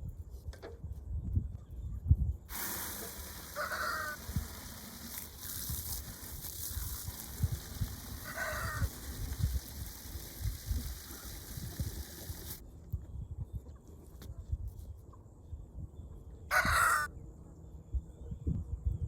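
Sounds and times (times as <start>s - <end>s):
steady rushing hiss: 2.5s - 12.6s
crow cawing: 16.5s - 17.1s.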